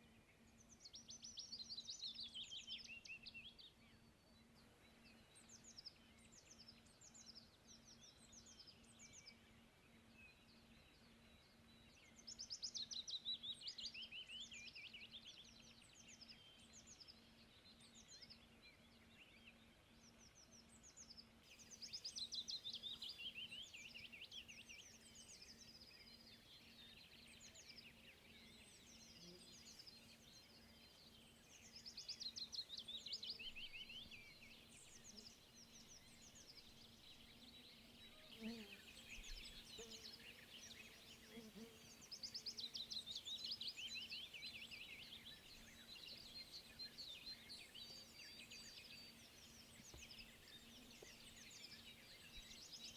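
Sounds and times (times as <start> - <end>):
songbirds singing: 0.0 - 52.9
bird chirps and calls: 21.5 - 52.9.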